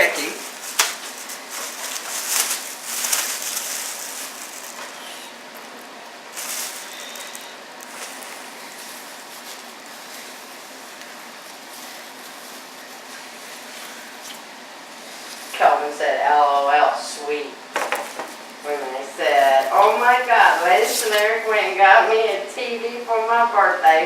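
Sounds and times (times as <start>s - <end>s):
packaging rustling and scraping: 0.0s - 5.7s, 6.3s - 14.4s, 19.2s - 21.6s.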